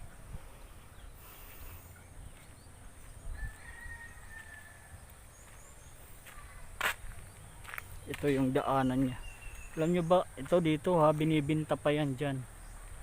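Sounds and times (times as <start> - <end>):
wind rumble on microphone: 3.0 - 5.1.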